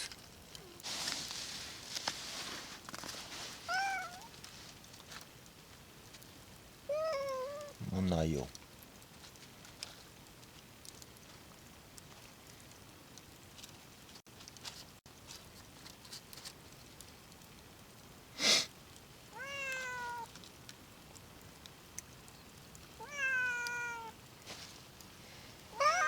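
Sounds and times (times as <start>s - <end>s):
cat meowing: 3.7s - 4.3s, 6.9s - 7.8s, 19.3s - 20.3s, 23.0s - 24.2s, 25.7s - 26.0s.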